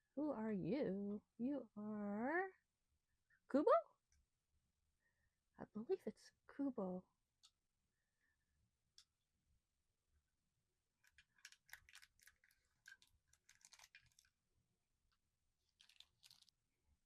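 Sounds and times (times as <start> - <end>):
packaging crinkling and clicking: 11.0 - 14.4, 15.7 - 16.6.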